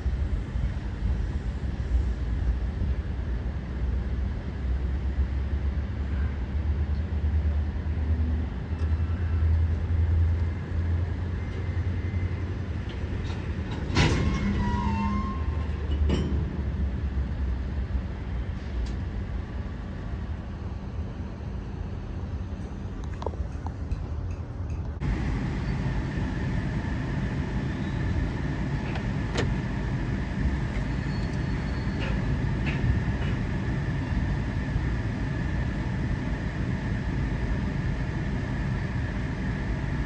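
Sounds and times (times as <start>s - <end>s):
diesel locomotive rumbling: 0.0s - 6.8s, 7.9s - 40.0s
brief squeal: 14.1s - 15.8s, 30.5s - 32.8s.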